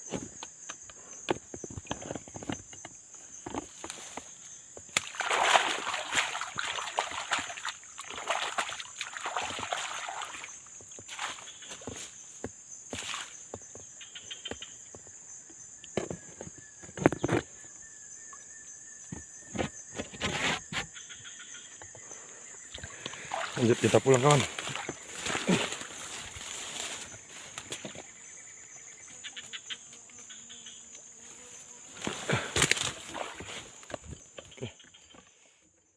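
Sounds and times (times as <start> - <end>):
water sloshing: 4.9 - 11.7, 22.7 - 28.1, 32.3 - 34.7
footsteps through undergrowth: 22.9 - 28.2.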